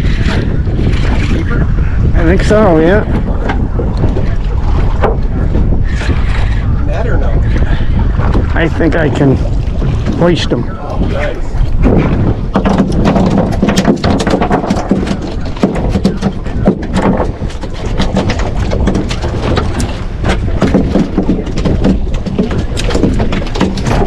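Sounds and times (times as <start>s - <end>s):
boat rumble: 0.0s - 24.0s
wind noise on microphone: 0.0s - 24.0s
knocks on boat hull: 11.8s - 24.0s.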